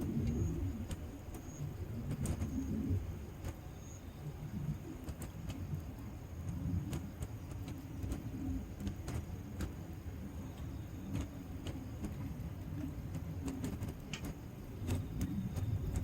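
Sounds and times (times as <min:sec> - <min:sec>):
wood fire crackling: 0:04.4 - 0:16.0.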